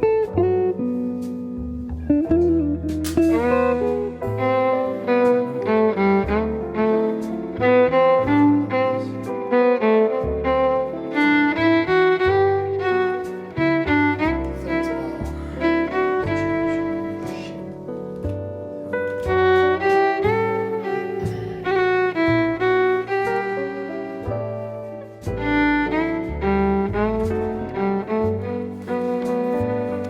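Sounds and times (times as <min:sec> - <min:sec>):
bowed strings melody: 0:00.0 - 0:30.0
low bass notes: 0:00.0 - 0:30.0.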